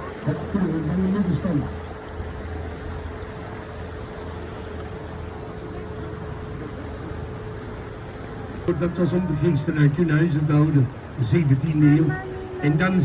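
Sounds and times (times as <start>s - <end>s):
boat motor humming: 0.0s - 13.0s.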